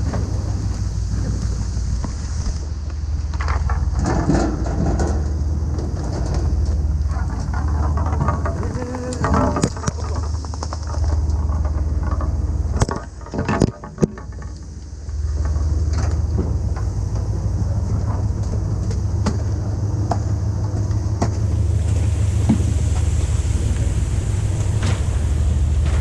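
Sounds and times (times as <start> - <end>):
boat engine droning: 0.0 - 26.0.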